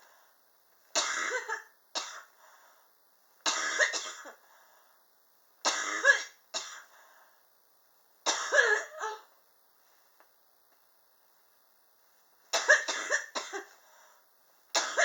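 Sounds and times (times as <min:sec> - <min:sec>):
person coughing: 0:01.0 - 0:02.3, 0:03.5 - 0:04.4, 0:08.3 - 0:09.3, 0:12.6 - 0:13.8, 0:14.8 - 0:15.0.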